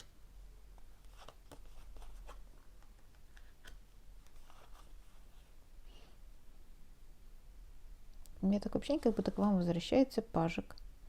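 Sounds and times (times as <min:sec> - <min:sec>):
cards shuffling: 0:01.0 - 0:05.0.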